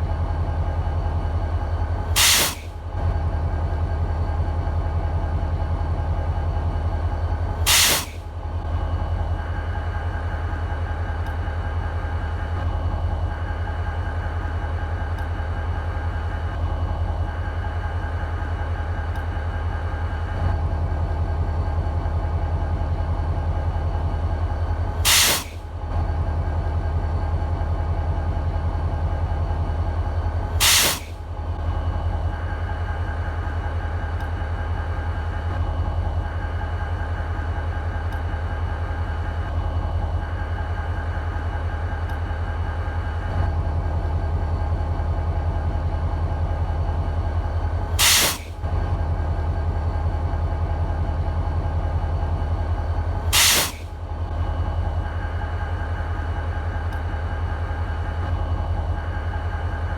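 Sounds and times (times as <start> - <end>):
diesel locomotive idling: 0.0 - 59.9
loud bursts of hissing air: 2.2 - 2.7, 7.7 - 8.2, 25.0 - 25.6, 30.6 - 31.2, 48.0 - 48.6, 53.3 - 53.9.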